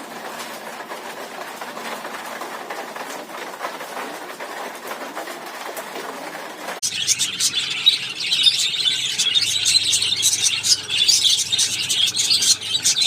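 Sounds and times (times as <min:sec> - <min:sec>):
small birds chirping: 0:06.8 - 0:13.0.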